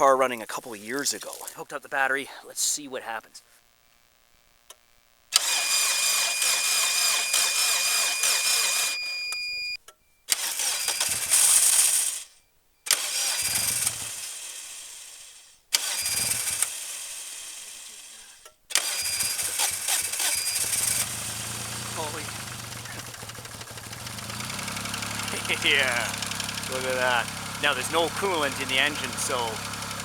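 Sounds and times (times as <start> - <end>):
car engine cranking and starting: 5.4 - 9.4, 10.3 - 12.3, 12.9 - 30.0.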